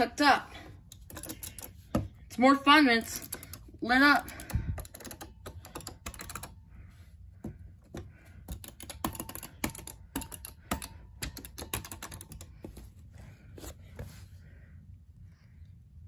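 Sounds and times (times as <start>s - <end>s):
elevator buttons clicking: 3.0s - 6.6s, 7.9s - 12.6s.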